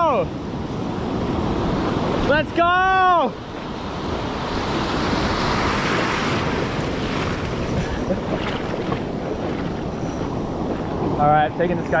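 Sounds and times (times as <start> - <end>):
ocean surf breaking: 0.0 - 12.0
wind buffeting microphone: 3.4 - 12.0.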